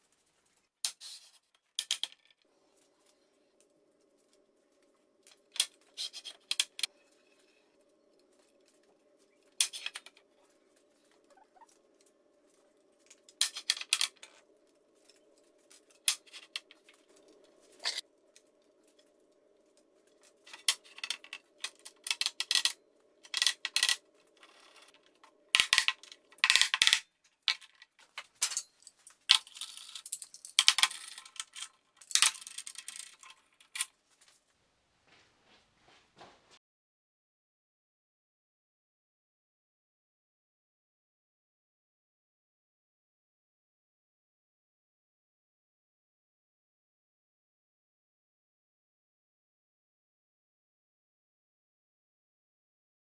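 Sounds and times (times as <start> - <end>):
faint steady hum: 2.5 - 26.5.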